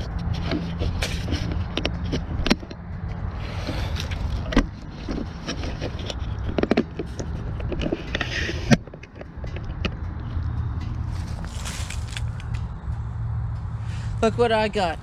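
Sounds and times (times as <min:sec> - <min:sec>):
objects knocking and rattling: 0:00.0 - 0:12.6
low steady rumble: 0:00.0 - 0:15.0
short scraping: 0:03.4 - 0:09.1.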